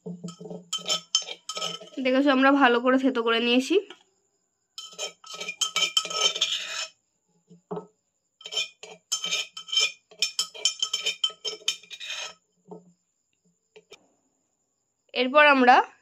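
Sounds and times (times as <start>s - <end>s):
metal utensil clinking on metal vessel: 0.1s - 2.0s, 4.8s - 6.9s, 8.4s - 12.3s.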